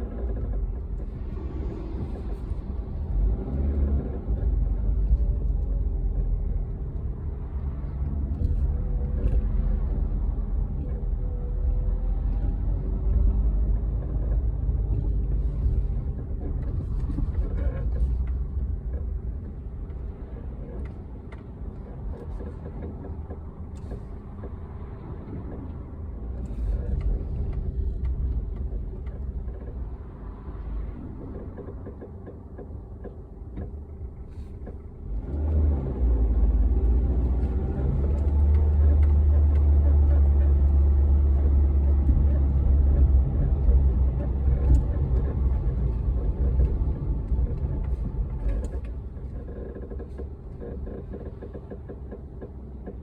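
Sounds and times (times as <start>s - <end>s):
car road and engine rumble: 0.0s - 53.0s
short creaks and clicks: 26.4s - 34.9s, 36.3s - 53.0s.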